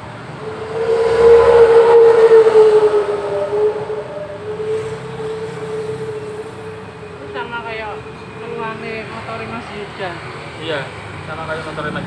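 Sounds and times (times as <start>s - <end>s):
loud horn-like intake hum: 0.2s - 9.1s.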